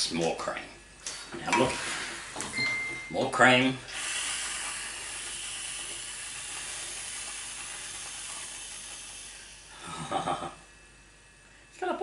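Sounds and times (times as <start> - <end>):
aerosol whipped cream hiss: 3.9 - 9.8.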